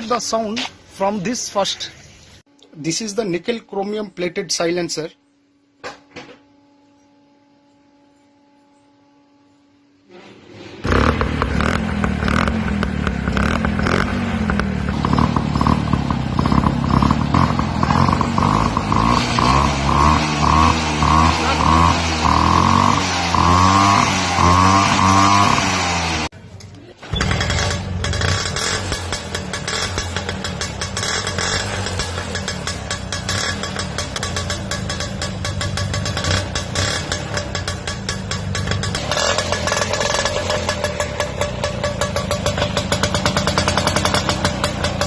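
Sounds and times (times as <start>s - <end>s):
scooter engine revving: 10.2s - 26.4s, 27.0s - 45.0s.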